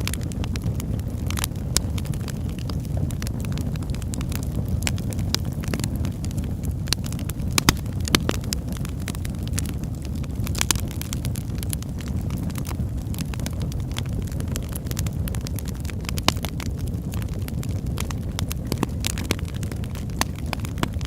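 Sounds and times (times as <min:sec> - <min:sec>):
wood fire crackling: 0:00.0 - 0:21.0.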